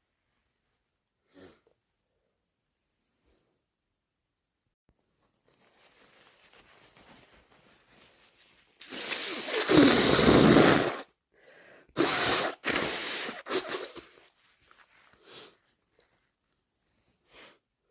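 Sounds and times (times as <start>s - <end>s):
person blowing nose: 8.8s - 11.2s, 12.0s - 14.4s.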